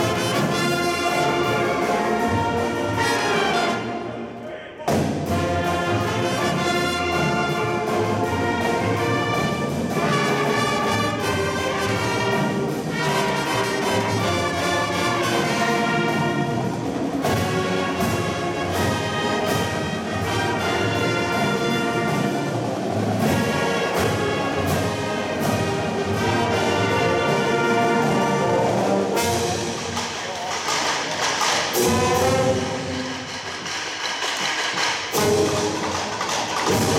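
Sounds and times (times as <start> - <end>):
brass chords: 0.0 - 30.2, 31.2 - 33.6
sharp drum accents: 28.3 - 36.9.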